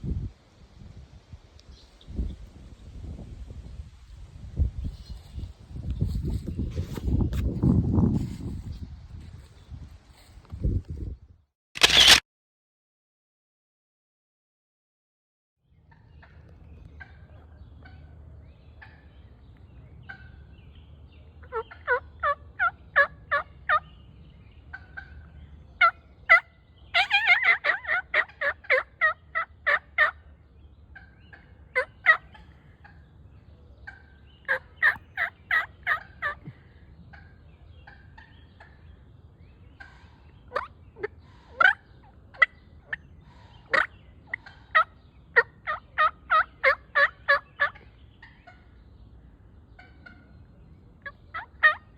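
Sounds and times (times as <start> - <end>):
turkeys yelping: 21.4 - 23.9, 24.7 - 30.2, 31.0 - 33.0, 33.8 - 38.8, 39.8 - 48.7, 49.7 - 50.4, 51.0 - 51.9.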